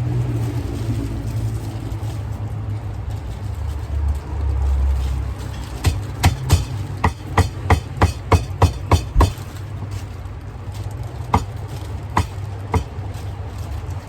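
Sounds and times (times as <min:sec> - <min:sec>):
traffic rumble: 0:00.0 - 0:14.0
cleaver chopping on wooden block: 0:05.8 - 0:09.4, 0:11.4 - 0:11.6, 0:12.2 - 0:12.9.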